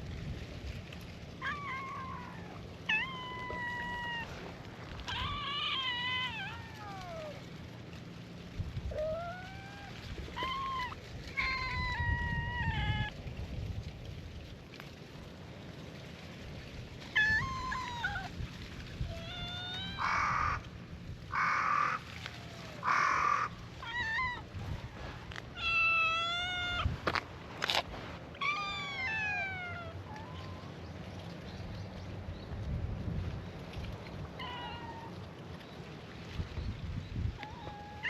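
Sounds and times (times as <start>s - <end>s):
cats meowing: 1.4s - 7.4s, 8.9s - 13.2s, 17.1s - 18.3s, 19.0s - 20.7s, 21.3s - 30.7s, 34.4s - 35.2s, 37.4s - 38.0s.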